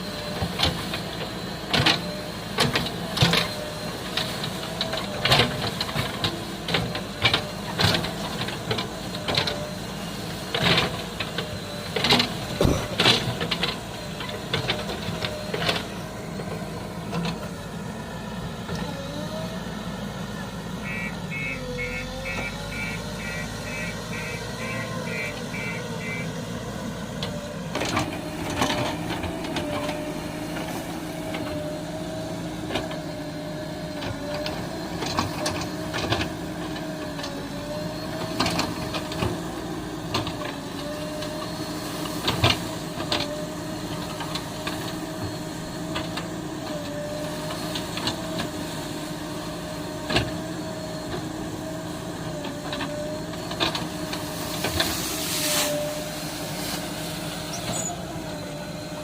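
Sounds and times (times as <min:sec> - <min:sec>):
engine running with wavering hum: 0:00.0 - 0:59.0
sharp clanks and knocks: 0:12.0 - 0:13.7
short beeps: 0:20.8 - 0:26.4.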